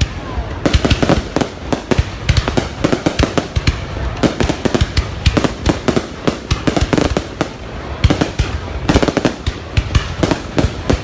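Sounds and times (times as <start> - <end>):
fireworks bangs and cracks: 0.0 - 11.0.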